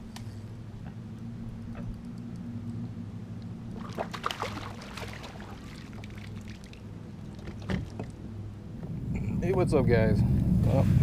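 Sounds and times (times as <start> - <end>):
steady low hum: 0.0 - 11.0
water splashing and trickling: 3.4 - 8.4.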